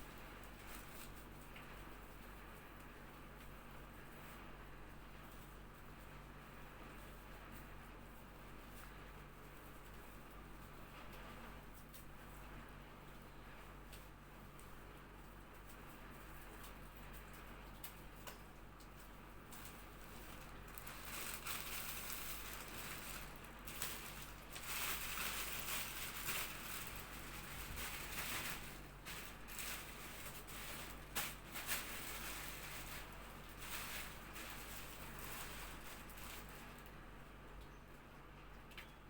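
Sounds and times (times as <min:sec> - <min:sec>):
rustling and crinkling of equipment: 0:00.0 - 0:04.5, 0:15.5 - 0:37.0.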